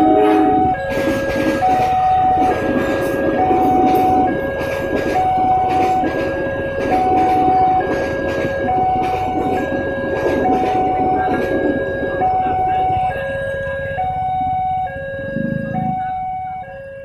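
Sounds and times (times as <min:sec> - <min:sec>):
train wheels clattering on rails: 0:00.0 - 0:14.5
train rumbling: 0:00.0 - 0:17.0
two-tone warning siren: 0:00.0 - 0:17.0.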